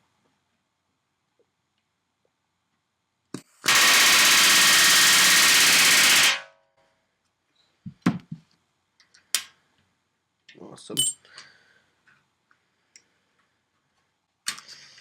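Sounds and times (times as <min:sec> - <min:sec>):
pneumatic rivet gun hammering: 0:03.7 - 0:06.4.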